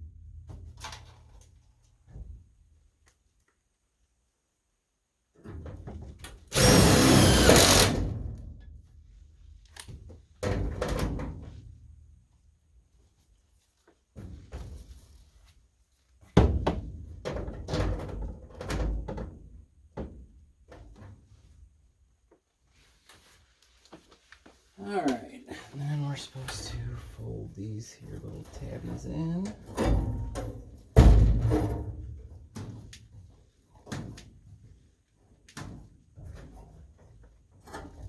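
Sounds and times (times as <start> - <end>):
loud harsh burst: 6.5 - 8.1.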